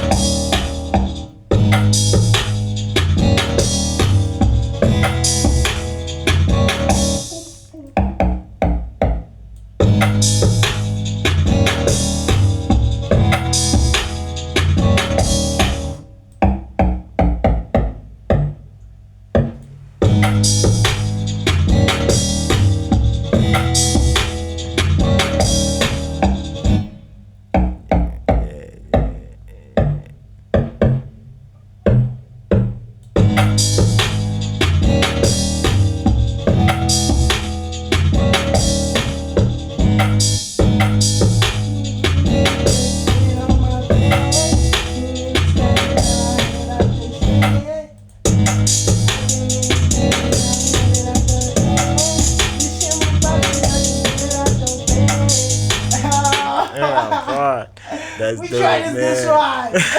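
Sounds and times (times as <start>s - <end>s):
instrumental beat with drums and bass: 0.0s - 16.0s, 20.0s - 26.9s, 32.5s - 47.6s, 48.3s - 57.3s
trap beat: 48.4s - 57.6s.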